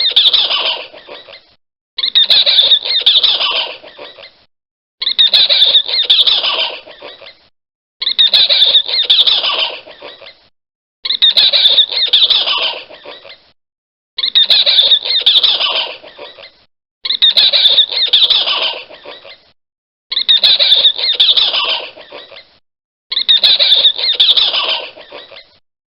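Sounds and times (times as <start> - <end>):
monkey screaming: 0.0 - 1.4, 2.0 - 4.4, 5.0 - 7.4, 8.0 - 10.4, 11.0 - 13.4, 14.2 - 19.5, 20.1 - 25.6.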